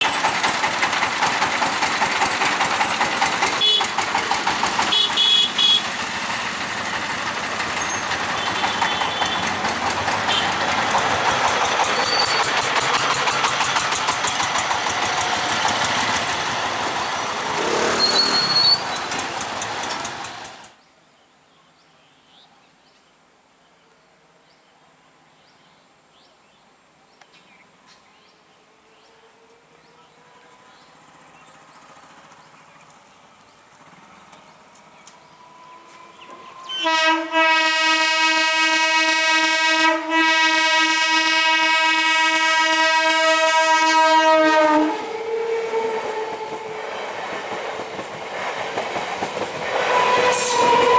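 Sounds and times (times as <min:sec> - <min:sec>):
train passing at speed: 0:00.0 - 0:20.8, 0:29.5 - 0:50.9.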